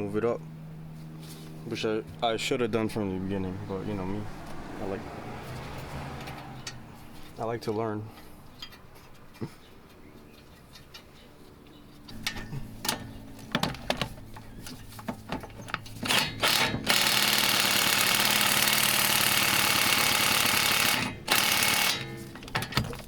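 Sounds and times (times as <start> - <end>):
power tool running: 16.0 - 22.3.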